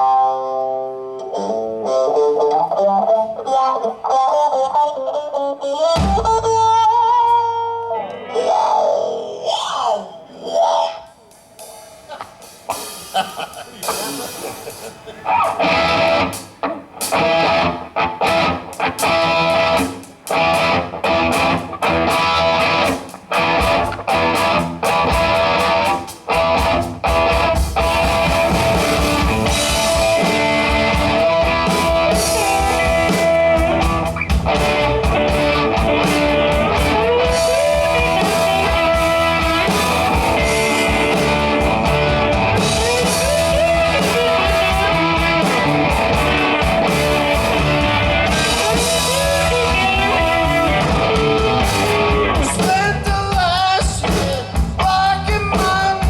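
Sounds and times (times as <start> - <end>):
person singing: 0.0 - 15.6, 29.3 - 56.0
electric guitar: 0.0 - 56.0
drum kit: 5.9 - 7.9, 11.2 - 56.0.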